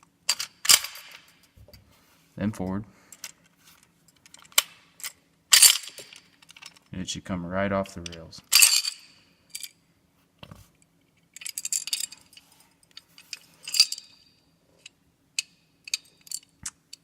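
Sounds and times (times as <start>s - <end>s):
metal clicks and clinks: 11.3s - 17.0s.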